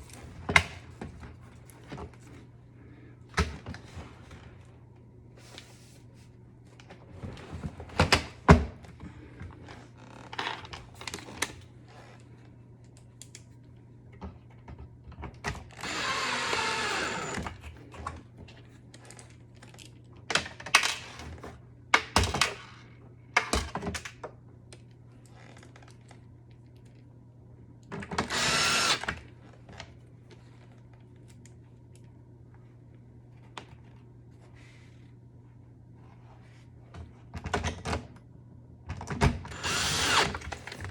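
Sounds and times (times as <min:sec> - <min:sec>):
cordless drill driving screws: 0:15.8 - 0:17.5, 0:28.2 - 0:29.1, 0:39.5 - 0:40.7.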